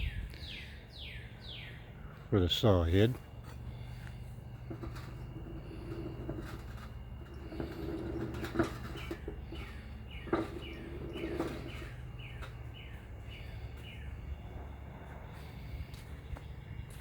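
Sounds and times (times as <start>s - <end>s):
bird chirping: 0.0s - 2.3s, 8.9s - 14.4s.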